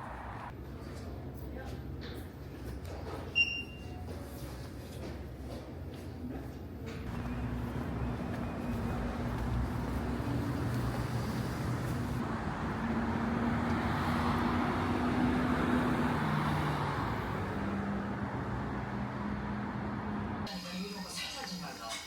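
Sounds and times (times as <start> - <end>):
traffic rumble and hiss: 0.0 - 1.4, 6.7 - 20.5.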